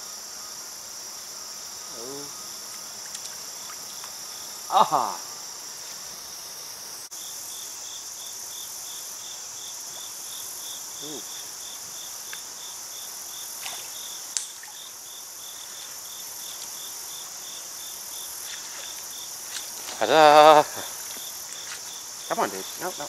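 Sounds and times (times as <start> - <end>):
insects chirping chorus: 0.0 - 23.0.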